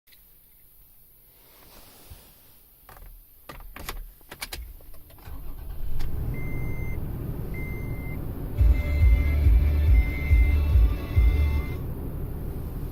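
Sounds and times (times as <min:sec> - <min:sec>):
car engine cranking and idling: 0:02.8 - 0:12.9
dashboard warning chime beeping: 0:06.3 - 0:11.9.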